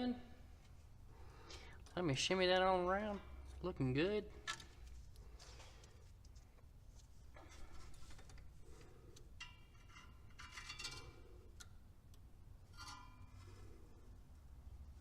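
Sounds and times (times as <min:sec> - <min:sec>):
light metal scraping: 0:07.5 - 0:11.7, 0:12.6 - 0:14.1.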